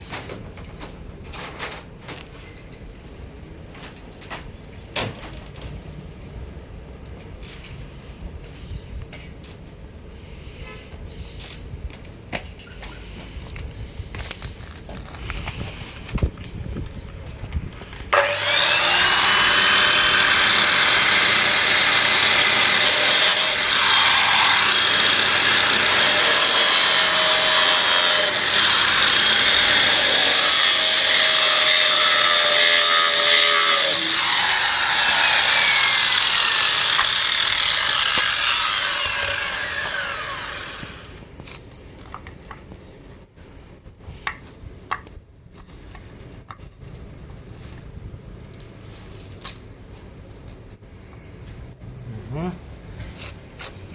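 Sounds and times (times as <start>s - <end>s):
angle grinder cutting steel chain: 18.2s - 41.2s.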